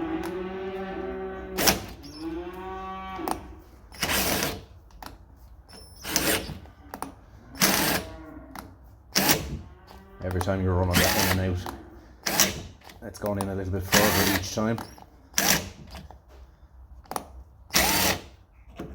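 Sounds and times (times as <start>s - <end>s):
drill motor whine: 17.8s - 18.2s.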